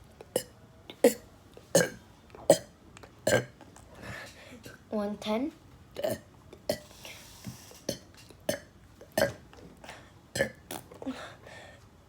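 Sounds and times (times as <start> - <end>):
person burping: 3.3 - 3.6, 10.4 - 11.1.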